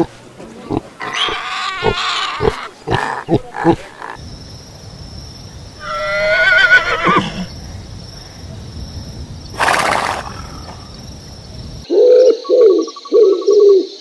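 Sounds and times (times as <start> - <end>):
pig grunts: 0.0 - 4.2
steady high hiss: 0.0 - 11.9
horse whinnying: 5.8 - 7.5.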